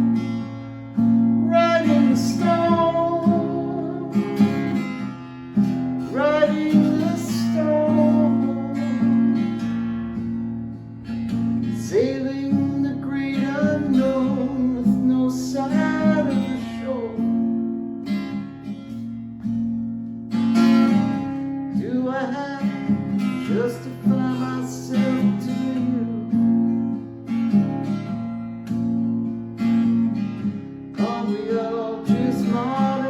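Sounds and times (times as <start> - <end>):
strummed acoustic guitar: 0.0 - 33.0
man singing: 1.4 - 4.8, 6.1 - 9.1, 11.8 - 17.3, 21.7 - 26.4, 31.0 - 33.0.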